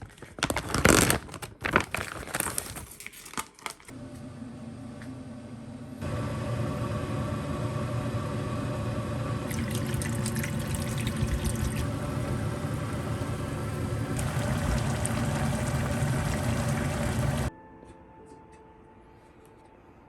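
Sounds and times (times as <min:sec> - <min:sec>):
water running: 0:09.4 - 0:17.5.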